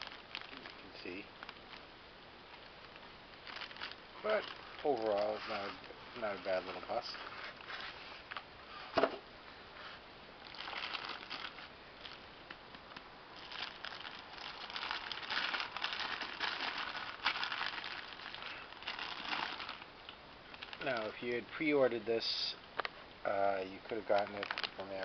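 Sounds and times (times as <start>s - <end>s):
packaging crinkling: 0.0s - 1.9s, 2.5s - 8.4s, 10.4s - 21.2s, 23.8s - 25.0s.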